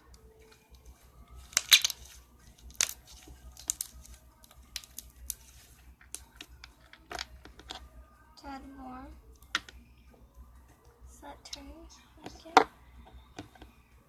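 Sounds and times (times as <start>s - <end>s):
slime clicking and popping: 1.5s - 5.4s.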